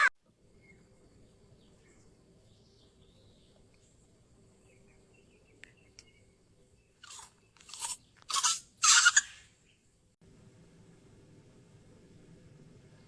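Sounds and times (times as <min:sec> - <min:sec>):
crunching bites into cucumber: 0:07.0 - 0:08.6.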